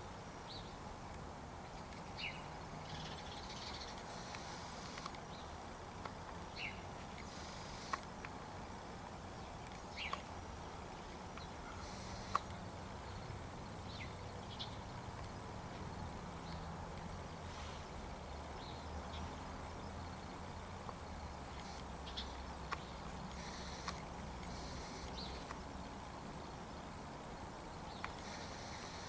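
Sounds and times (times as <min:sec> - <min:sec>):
outdoor background noise: 0:00.0 - 0:29.0
sharp clicks: 0:03.6 - 0:05.3, 0:07.1 - 0:08.4, 0:11.3 - 0:12.6, 0:20.8 - 0:25.7
short bird calls: 0:11.5 - 0:12.5.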